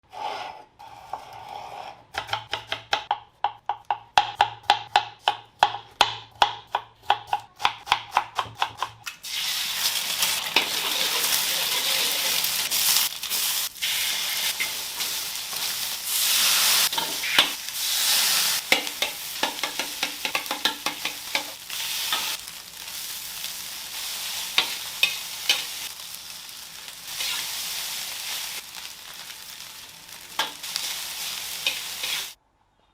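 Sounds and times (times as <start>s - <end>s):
food sizzling in a hot pan: 9.2s - 32.4s.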